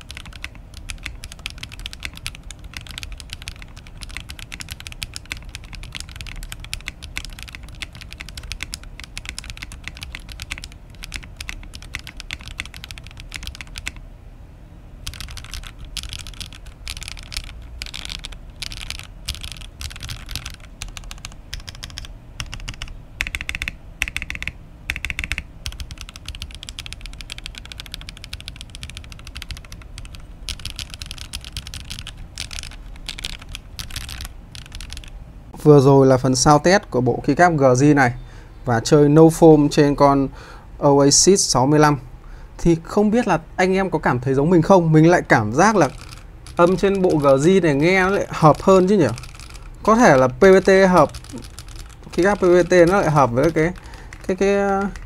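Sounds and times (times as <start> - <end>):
mechanical keyboard typing: 0.0 - 14.0, 15.0 - 35.1, 45.2 - 55.0.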